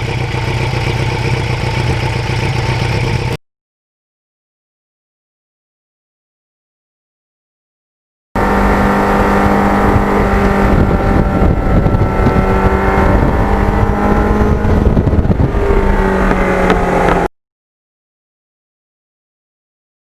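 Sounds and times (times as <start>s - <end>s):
motorcycle engine running: 0.0s - 3.4s, 8.4s - 17.3s
wind rumble on microphone: 8.4s - 17.3s.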